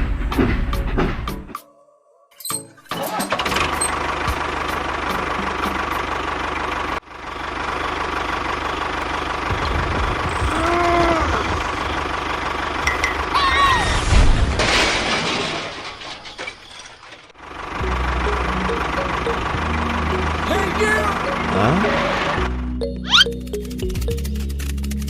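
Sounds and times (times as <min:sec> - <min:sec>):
small engine running with whine: 0:03.4 - 0:13.4, 0:17.4 - 0:25.0.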